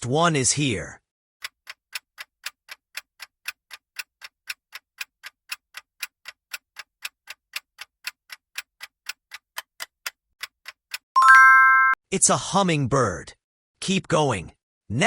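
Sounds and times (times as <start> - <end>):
clock ticking: 1.4 - 11.7.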